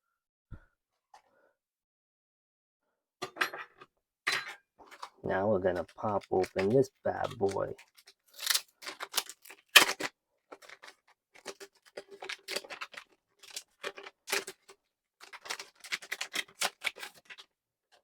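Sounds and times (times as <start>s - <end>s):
packaging clicks and crinkles: 5.7s - 17.5s.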